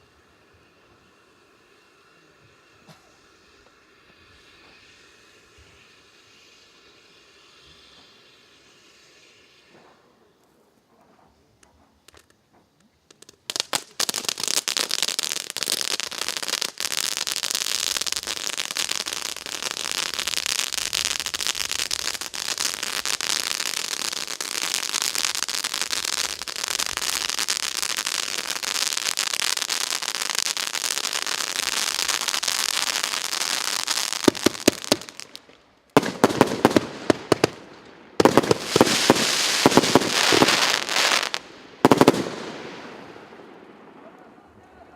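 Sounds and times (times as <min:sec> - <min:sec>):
firework crackling hiss: 0:00.0 - 0:10.8, 0:11.6 - 0:44.9
firework sharp pops: 0:11.6 - 0:44.2.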